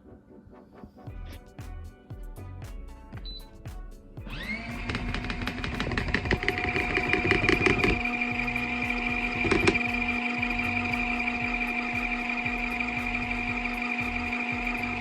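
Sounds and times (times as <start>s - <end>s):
washing machine motor whine: 4.3s - 15.0s
rapid rattling: 4.4s - 15.0s.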